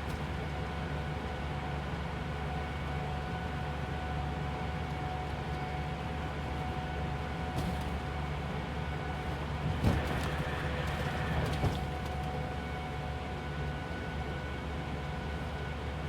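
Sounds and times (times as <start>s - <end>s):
bus road and engine rumble: 0.0s - 16.0s.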